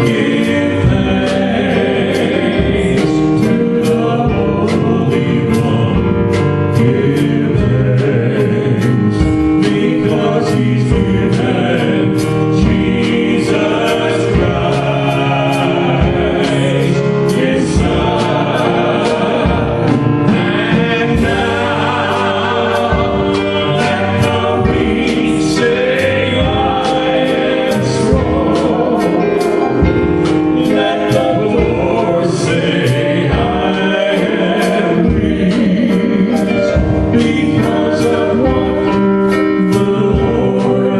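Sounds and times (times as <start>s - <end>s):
instrumental accompaniment with beat: 0.0s - 40.9s
voices singing together: 0.0s - 40.9s.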